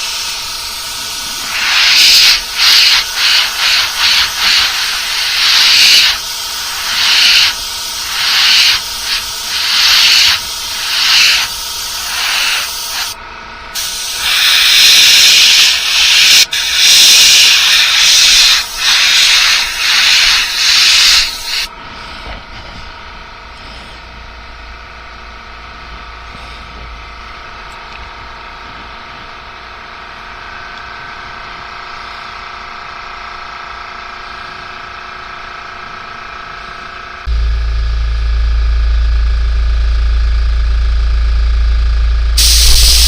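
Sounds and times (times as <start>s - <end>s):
airbrush spraying hiss: 0.0s - 13.2s, 13.8s - 22.3s, 42.4s - 43.0s
steady hum: 0.0s - 43.0s.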